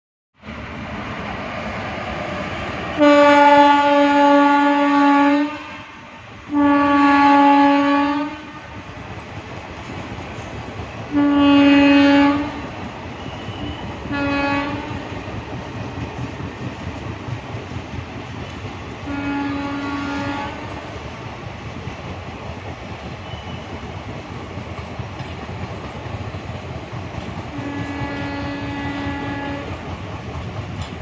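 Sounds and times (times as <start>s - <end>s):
train rumbling: 0.4s - 31.0s
train horn blasts: 3.0s - 8.8s, 11.1s - 15.2s, 19.0s - 20.9s, 27.5s - 29.8s.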